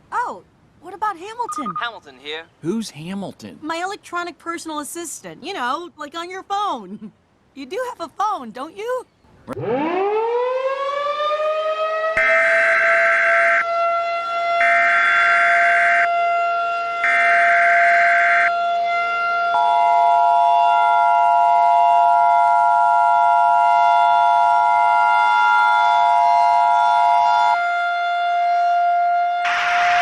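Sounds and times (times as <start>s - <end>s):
civil defense siren: 9.5s - 30.0s.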